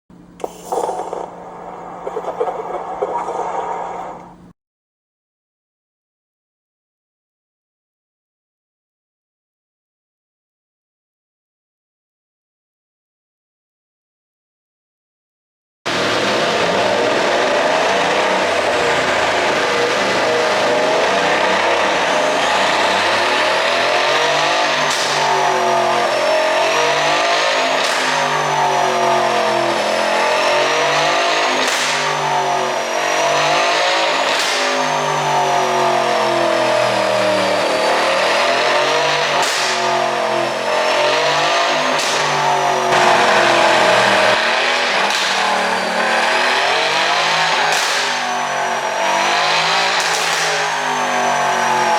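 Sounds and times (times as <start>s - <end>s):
car engine revving: 15.9s - 51.9s.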